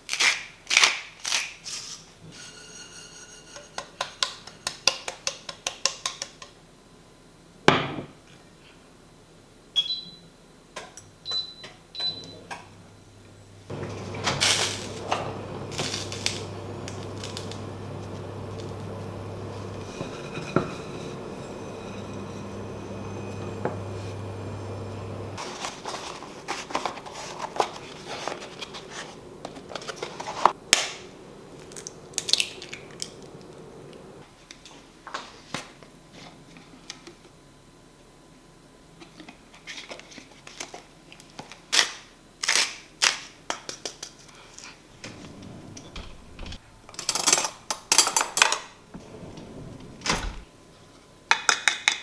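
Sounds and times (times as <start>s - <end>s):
kitchen appliance humming: 2.3s - 5.2s, 13.5s - 34.3s, 44.9s - 50.7s
dishes and cutlery clinking: 2.3s - 5.4s, 45.1s - 50.4s.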